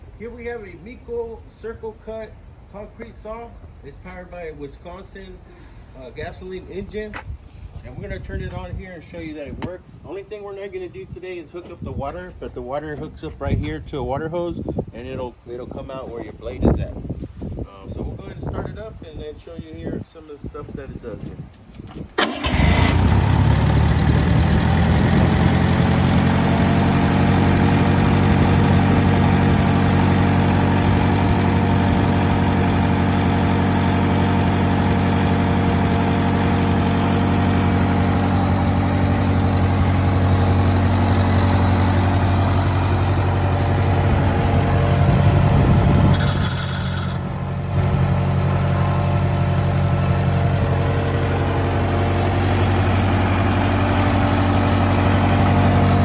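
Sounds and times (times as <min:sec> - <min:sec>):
concrete saw engine running: 0:22.2 - 0:56.0.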